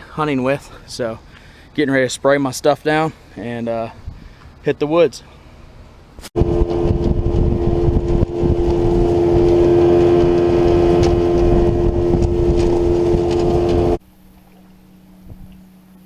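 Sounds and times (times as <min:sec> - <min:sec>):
outboard motor droning: 0:06.4 - 0:16.0.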